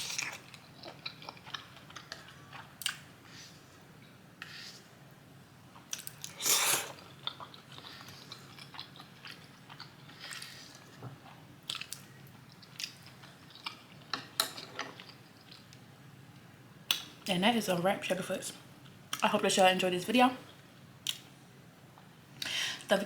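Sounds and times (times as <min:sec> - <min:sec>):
chewing and mouth smacks: 0:00.0 - 0:03.0, 0:05.8 - 0:14.2.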